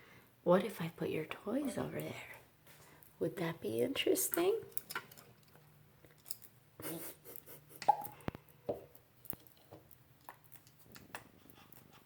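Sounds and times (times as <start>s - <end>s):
small objects clicking and tapping: 4.3s - 6.6s, 7.8s - 11.9s.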